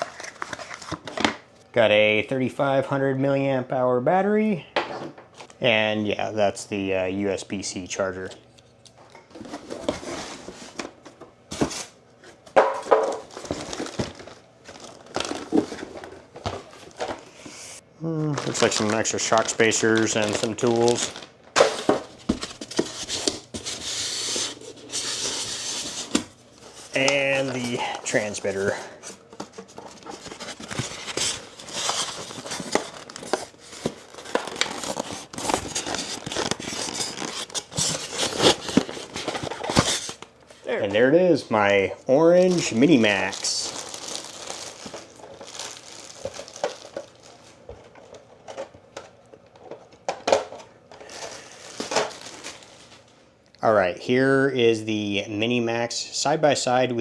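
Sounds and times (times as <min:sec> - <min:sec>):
plastic packaging crinkling: 0:00.0 - 0:01.5, 0:12.5 - 0:40.5, 0:42.3 - 0:53.2.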